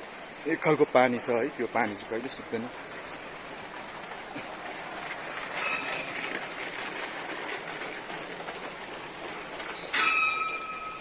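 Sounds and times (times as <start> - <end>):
water running from a spring: 0.0 - 11.0
bright metallic ring: 5.6 - 6.2, 9.9 - 11.0.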